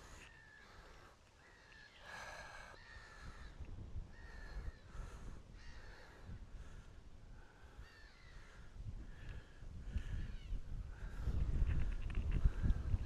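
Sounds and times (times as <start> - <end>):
crows cawing: 0.0 - 6.8, 7.4 - 10.6
wind on microphone: 2.1 - 13.0.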